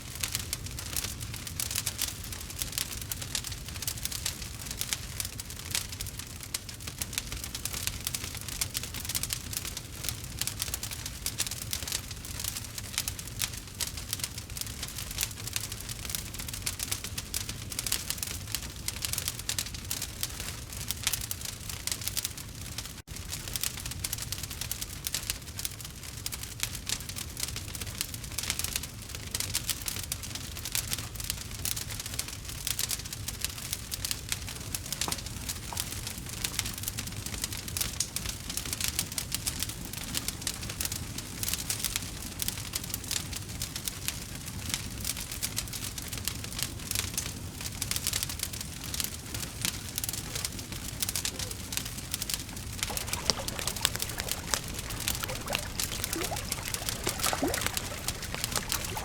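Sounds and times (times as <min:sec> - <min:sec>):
wood fire crackling: 0:52.8 - 0:59.0.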